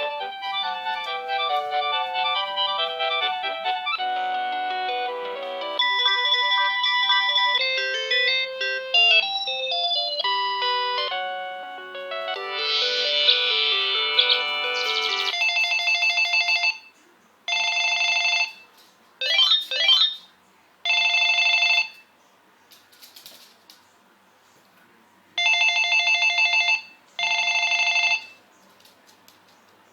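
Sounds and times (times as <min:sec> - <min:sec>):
cordless phone ringtone melody: 0:00.0 - 0:16.9, 0:17.5 - 0:18.6, 0:19.2 - 0:20.2, 0:20.9 - 0:22.0, 0:25.4 - 0:28.4
swooping electronic chirps: 0:12.4 - 0:15.4.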